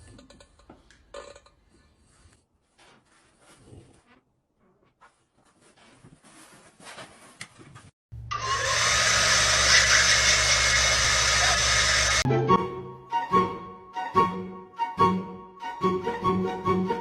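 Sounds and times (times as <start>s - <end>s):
electric motor with rushing air: 8.4s - 12.2s.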